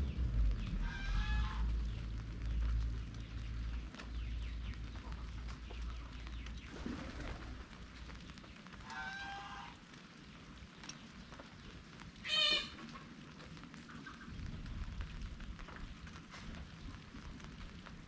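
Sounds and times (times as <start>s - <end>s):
farm animal calling: 12.2s - 13.0s.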